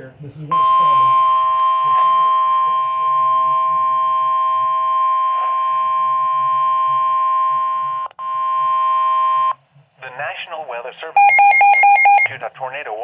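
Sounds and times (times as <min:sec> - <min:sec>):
weather radio alarm tone: 0:00.6 - 0:07.8, 0:11.2 - 0:12.3.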